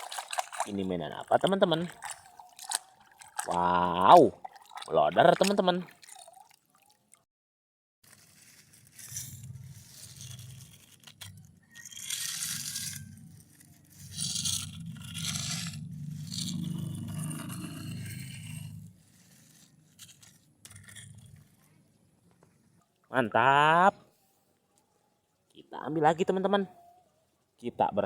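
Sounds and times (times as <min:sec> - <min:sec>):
scrubbing and scraping: 0:00.0 - 0:07.0, 0:08.0 - 0:23.0.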